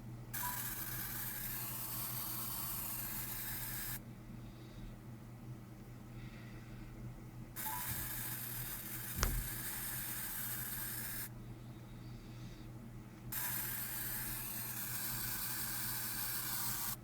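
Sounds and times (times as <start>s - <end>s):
static hiss: 7.6s - 11.3s.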